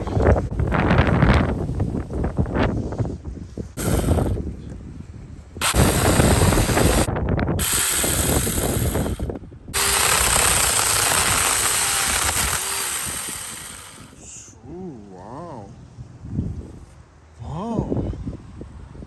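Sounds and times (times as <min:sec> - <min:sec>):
cordless chainsaw cutting branch: 0:03.8 - 0:04.4, 0:05.6 - 0:14.2.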